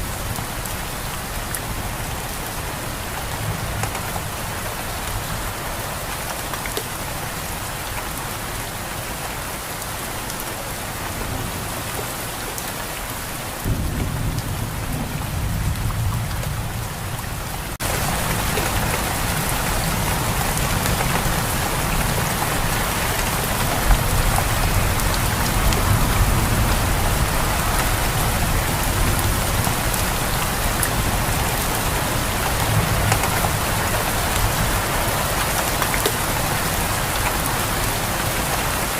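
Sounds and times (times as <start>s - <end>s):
rain falling: 0.0s - 38.9s
thunder rumbling: 13.6s - 38.6s.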